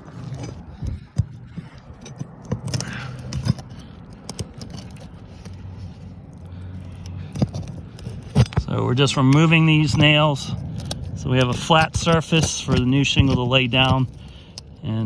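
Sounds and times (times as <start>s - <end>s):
nails scraping: 0.0s - 15.0s.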